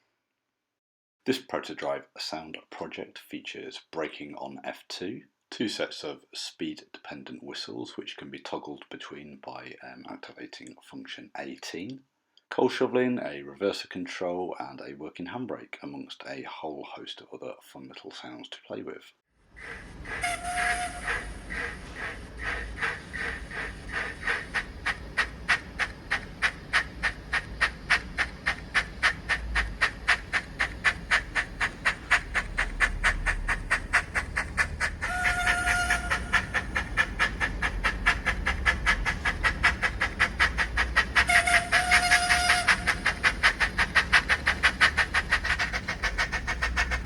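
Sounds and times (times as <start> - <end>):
model steam locomotive chuffs: 19.5 - 47.0
locomotive whistle blast: 19.6 - 22.5, 35.0 - 36.9, 41.1 - 43.4.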